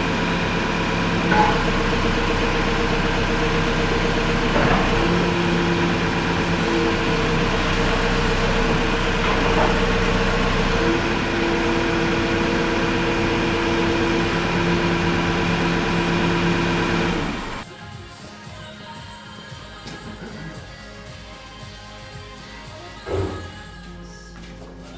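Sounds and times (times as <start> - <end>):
heavy engine running: 0.0 - 17.7.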